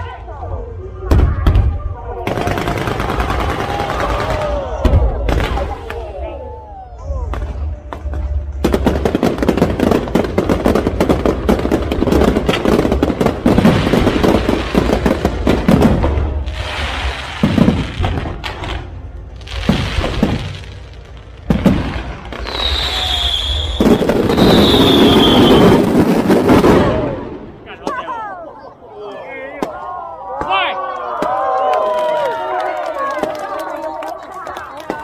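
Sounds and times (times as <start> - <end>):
fireworks crackling bangs: 7.3 - 28.0
firework whistles: 22.3 - 26.0.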